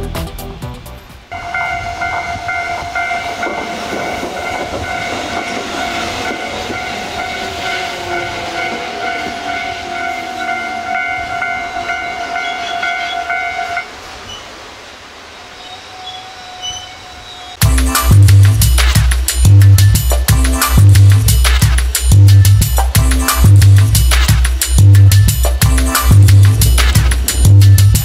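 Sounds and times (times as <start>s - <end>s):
train rumble and rail noise: 0.0s - 28.0s
crossing warning bell ringing: 1.3s - 13.9s.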